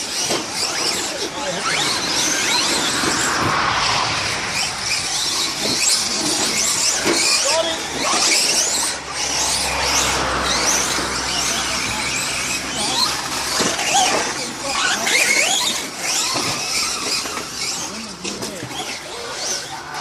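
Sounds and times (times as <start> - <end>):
radio-controlled car whining: 0.0 - 20.0.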